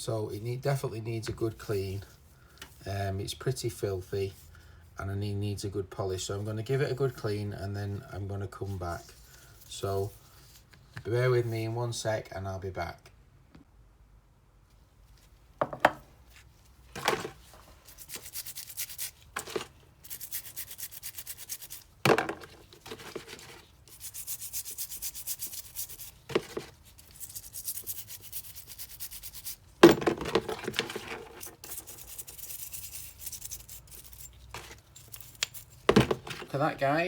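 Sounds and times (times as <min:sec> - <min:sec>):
scrubbing metal parts: 0:16.9 - 0:36.6
metal parts knocking: 0:29.8 - 0:31.3.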